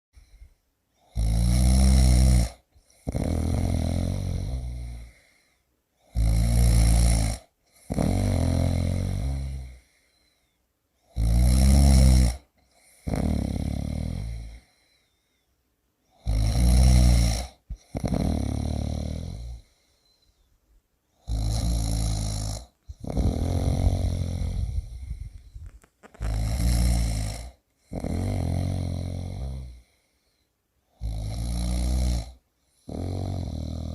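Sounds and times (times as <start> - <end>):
person snoring loudly: 1.0 - 5.3, 6.0 - 9.9, 11.1 - 14.7, 16.1 - 19.7, 21.2 - 29.9, 30.9 - 33.9.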